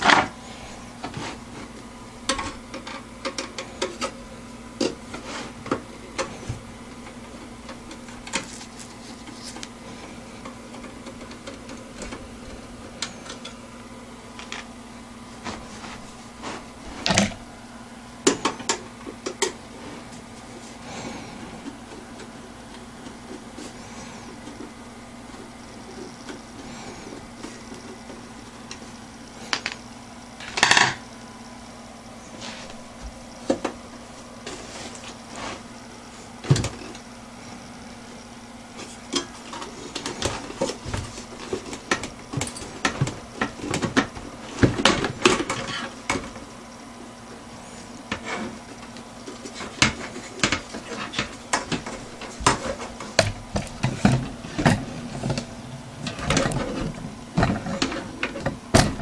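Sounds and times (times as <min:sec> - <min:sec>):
faint steady hum: 0:00.0 - 0:59.0
computer parts clattering: 0:48.1 - 0:59.0.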